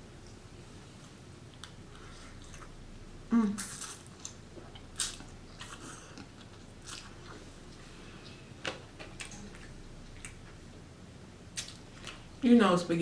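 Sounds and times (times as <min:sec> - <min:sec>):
person chewing: 0:01.0 - 0:02.8, 0:03.6 - 0:10.6.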